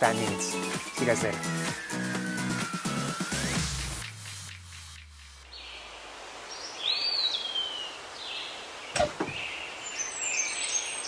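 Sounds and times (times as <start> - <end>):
birds chirping: 3.2 - 11.0
outdoor background noise: 3.5 - 11.0.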